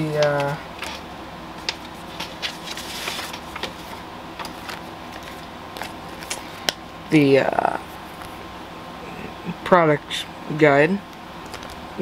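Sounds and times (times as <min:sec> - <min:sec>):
faint steady hum: 0:00.0 - 0:12.0
paper and packaging rustling: 0:01.6 - 0:06.5.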